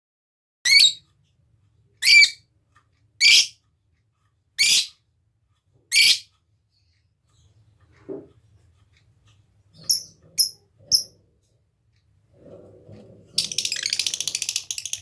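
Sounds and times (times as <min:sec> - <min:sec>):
lovebird shrill calls: 0:00.7 - 0:01.0, 0:02.0 - 0:02.4, 0:03.2 - 0:03.5, 0:04.6 - 0:04.9, 0:05.9 - 0:06.2.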